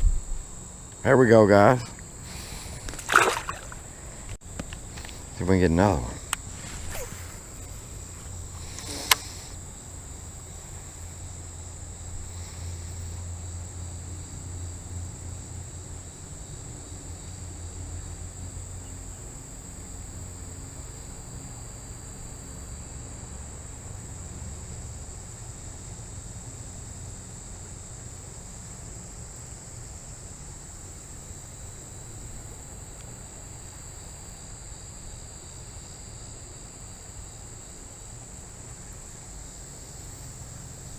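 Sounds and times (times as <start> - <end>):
wind rumble on microphone: 0.0 - 0.7
insects chirping: 0.0 - 40.9.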